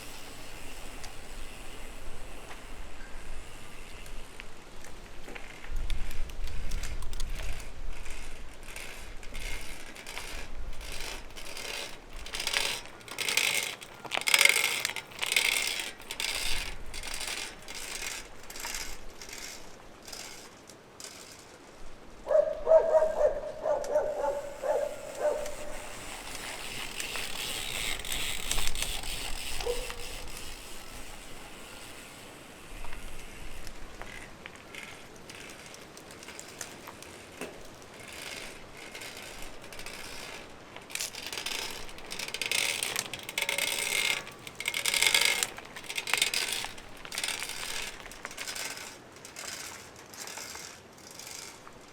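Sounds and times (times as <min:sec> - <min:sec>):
drawn-out pitched creak: 0:00.0 - 0:21.7, 0:23.7 - 0:51.9
bicycle hub clicking: 0:00.0 - 0:51.9
high whirring: 0:23.8 - 0:34.2.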